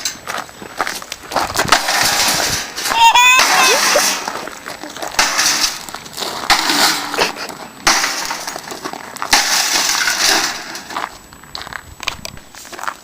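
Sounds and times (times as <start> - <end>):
metal computer case parts clattering: 5.0 - 11.1.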